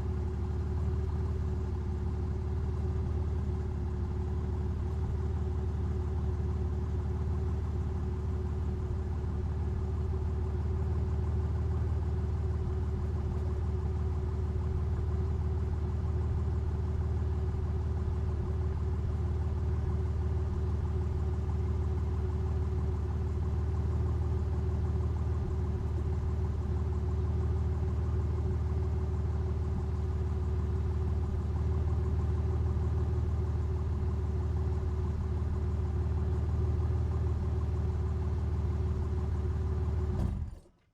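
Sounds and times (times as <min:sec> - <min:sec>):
car engine idling: 0:00.0 - 0:40.8.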